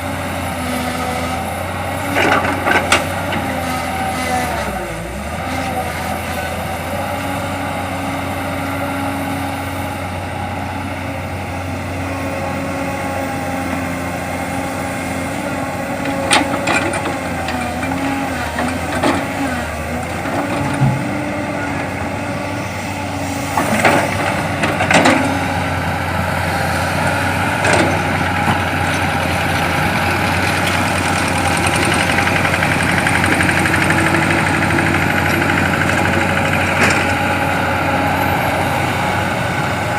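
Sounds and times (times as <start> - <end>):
heavy diesel engines running: 0.0 - 39.9.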